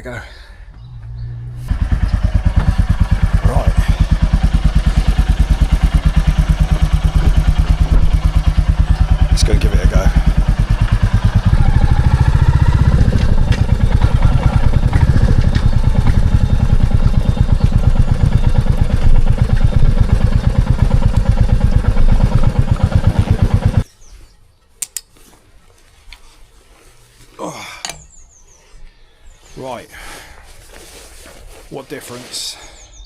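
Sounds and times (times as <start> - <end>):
motorcycle engine thumping: 0.8 - 23.9.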